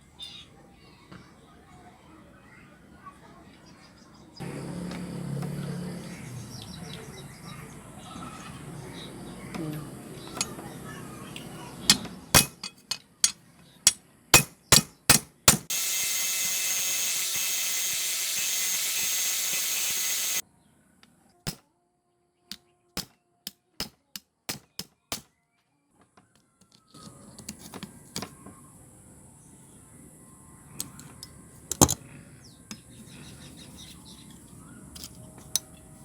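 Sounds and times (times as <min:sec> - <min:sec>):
steady hissing: 0:15.7 - 0:20.4.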